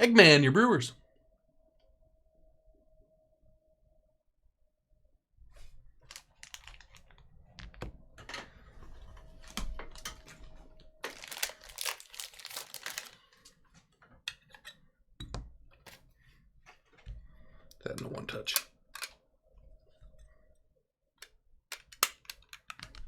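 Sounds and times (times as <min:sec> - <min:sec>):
plastic crinkling: 0:06.0 - 0:07.7, 0:09.3 - 0:13.6
cards and plastic holders clicking: 0:18.5 - 0:19.2, 0:21.2 - 0:23.0.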